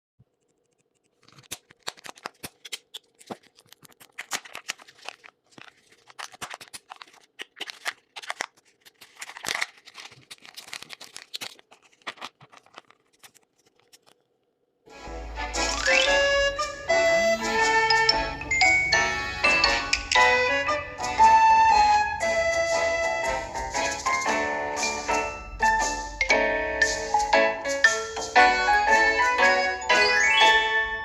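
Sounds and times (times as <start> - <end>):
hands crackling and rustling: 0.5 - 14.4.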